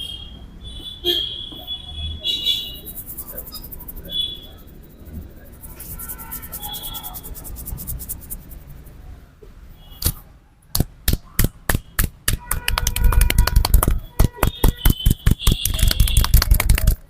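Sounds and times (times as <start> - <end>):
hands slapping on head: 10.0 - 17.0.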